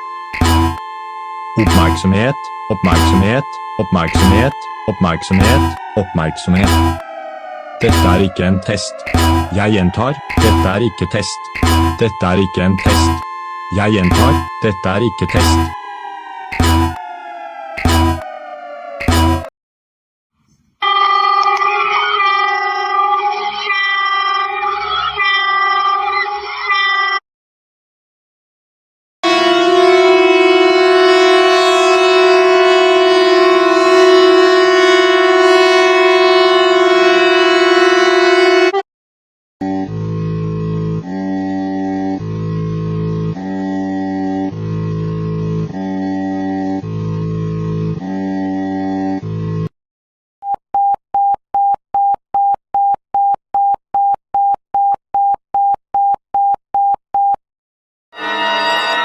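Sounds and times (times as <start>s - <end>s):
siren steady tone: 0.0s - 19.5s, 20.8s - 27.2s, 29.2s - 38.8s, 39.6s - 49.7s, 58.1s - 59.0s
rapid electronic alert beeps: 0.4s - 0.8s, 1.6s - 5.8s, 6.6s - 7.0s, 9.0s - 15.8s, 16.6s - 17.0s, 17.8s - 18.2s.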